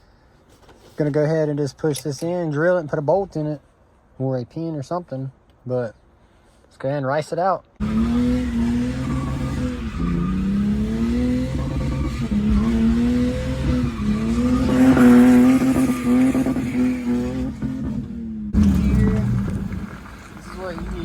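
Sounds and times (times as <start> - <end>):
tyre squeal: 7.8 - 17.7, 18.6 - 21.0
car engine revving: 7.8 - 21.0.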